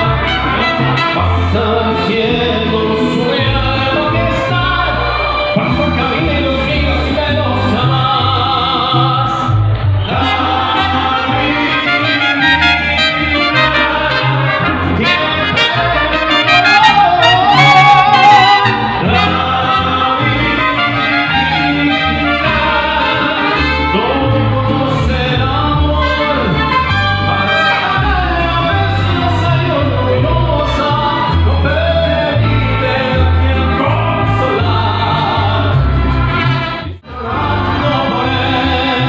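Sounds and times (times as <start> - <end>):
trumpets: 0.0 - 1.7, 10.1 - 24.6, 25.9 - 28.9, 32.4 - 39.0
mariachi band playing: 0.0 - 39.0
person singing: 0.0 - 39.0.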